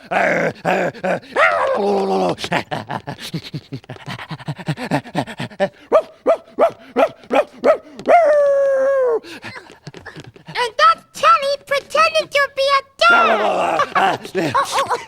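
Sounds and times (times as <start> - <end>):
person imitating a dog: 0.0 - 2.4, 4.2 - 9.4, 13.1 - 14.2.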